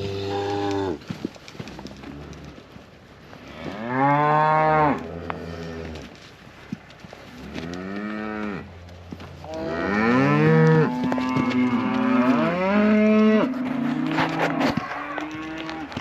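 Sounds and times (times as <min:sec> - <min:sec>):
cattle mooing: 0:00.0 - 0:01.0, 0:03.6 - 0:06.0, 0:09.4 - 0:16.0.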